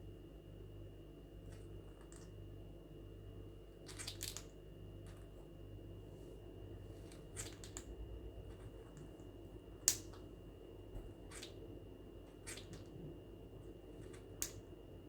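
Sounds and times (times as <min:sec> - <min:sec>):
parrot grinding its beak: 0:12.4 - 0:12.9.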